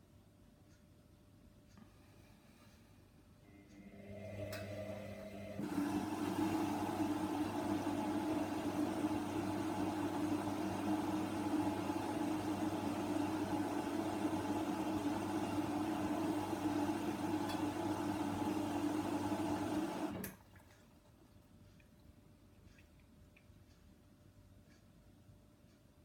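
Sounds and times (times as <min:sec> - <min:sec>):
washer dryer motor hum: 0:03.4 - 0:21.1.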